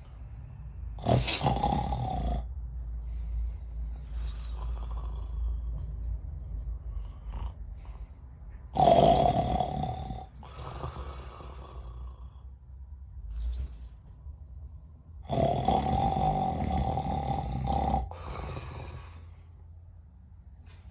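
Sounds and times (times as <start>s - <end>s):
person snoring: 1.0s - 2.5s, 4.3s - 5.7s, 8.8s - 12.5s, 15.2s - 19.3s
soft breathing: 2.4s - 8.7s, 10.0s - 12.8s, 18.0s - 20.0s.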